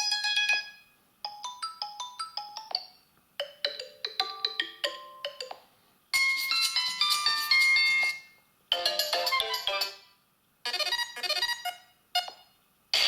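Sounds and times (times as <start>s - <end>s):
phone ringtone melodies: 0.0s - 5.6s, 6.2s - 10.1s.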